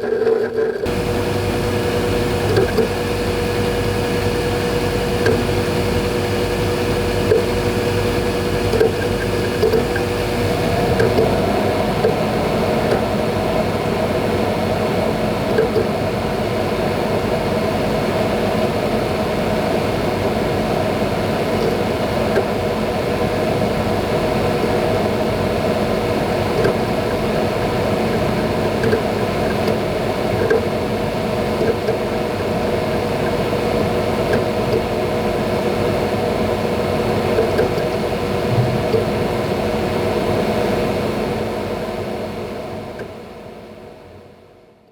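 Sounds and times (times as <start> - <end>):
hard drive ticks: 0.0 - 13.2, 26.5 - 30.8
fan whirring hum: 0.0 - 44.8.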